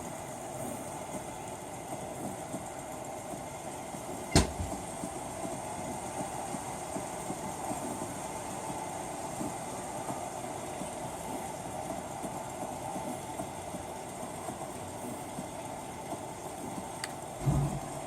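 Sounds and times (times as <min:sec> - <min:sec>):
sharp thump: 0:17.4 - 0:17.9.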